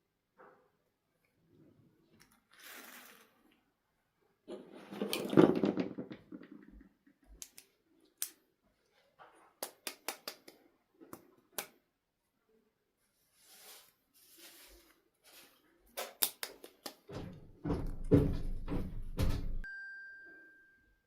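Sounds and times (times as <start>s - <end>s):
packaging rustling and scraping: 2.3s - 3.6s, 13.2s - 15.7s
sharp plastic clicks and taps: 9.6s - 11.8s.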